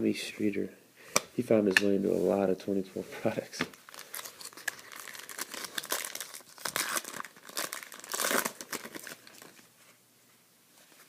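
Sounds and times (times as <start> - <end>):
wrapper crinkling and tearing: 3.7 - 9.7.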